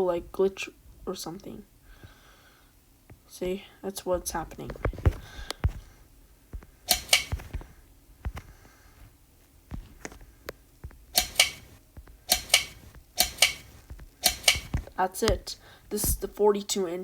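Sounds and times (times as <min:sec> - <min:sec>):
clicks and knocks: 0:06.9 - 0:07.7, 0:10.8 - 0:15.4.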